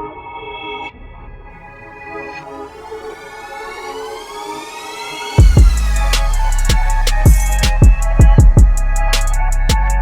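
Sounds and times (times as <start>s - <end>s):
ambient electronic synth chords: 0.0s - 10.0s.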